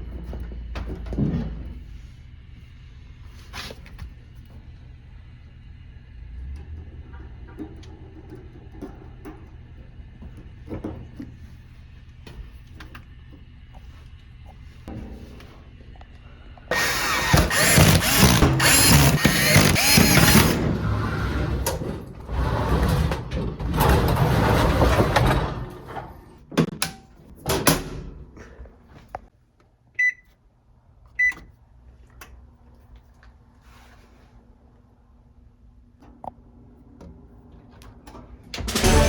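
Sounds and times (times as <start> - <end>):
oven electronic beeps: 30.0 - 30.3, 31.2 - 31.5.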